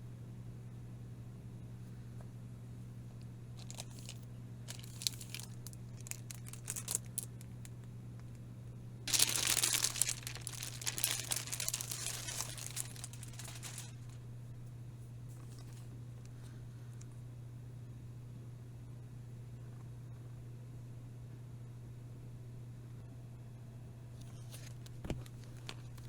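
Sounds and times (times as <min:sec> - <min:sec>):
steady low hum: 0:00.0 - 0:26.0
packaging crinkling and tearing: 0:03.6 - 0:07.7, 0:09.1 - 0:14.2.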